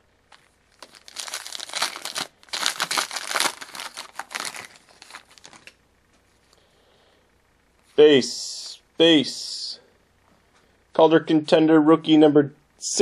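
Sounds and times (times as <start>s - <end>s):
wrapper crinkling and tearing: 0.3s - 5.8s.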